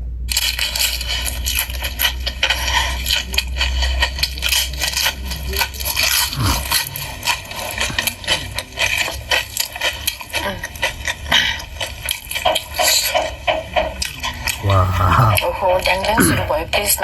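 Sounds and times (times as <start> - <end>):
food being chewed and crunched: 0.3 - 12.8.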